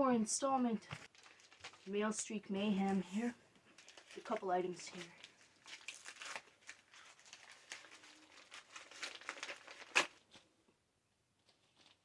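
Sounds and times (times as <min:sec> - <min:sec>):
sharp packaging crackle: 0:01.0 - 0:02.3, 0:03.0 - 0:10.4
mail packaging crinkling and rustling: 0:01.0 - 0:10.5, 0:11.4 - 0:12.0.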